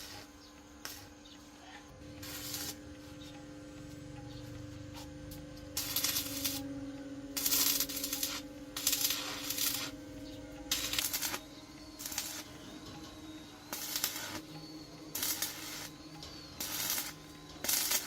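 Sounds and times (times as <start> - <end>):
metallic scraping and clinking: 4.9 - 18.0.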